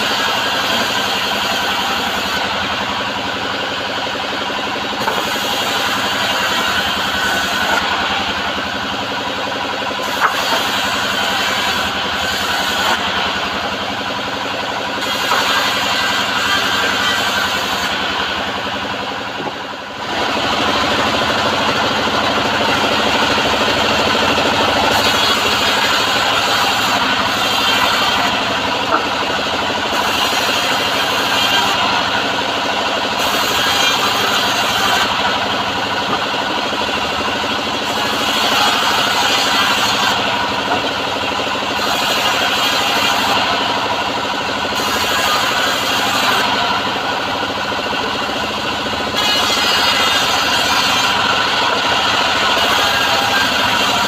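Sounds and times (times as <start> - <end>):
bandsaw cutting wood: 0.0 - 54.0
sawmill engine pulsing: 0.0 - 54.0
drive engine running: 17.9 - 33.3.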